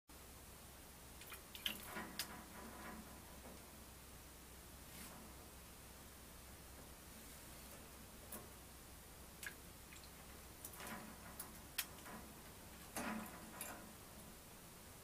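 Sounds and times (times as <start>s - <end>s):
bird splashing in water: 1.2s - 2.4s.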